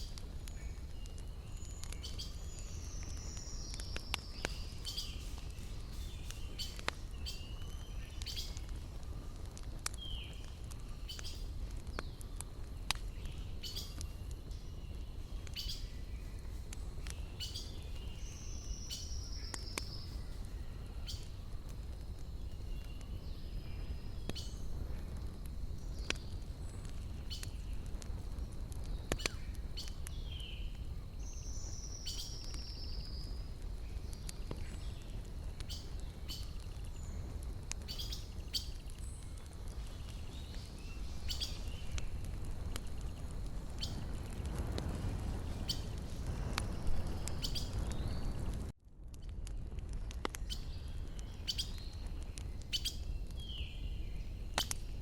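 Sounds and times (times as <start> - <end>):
wood fire crackling: 0.0 - 55.0
bird chirps: 39.9 - 42.0.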